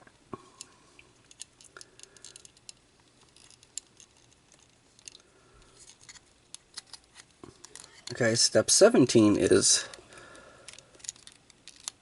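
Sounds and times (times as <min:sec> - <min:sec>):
plastic parts clicking and tapping: 0:00.6 - 0:08.2, 0:10.6 - 0:12.0.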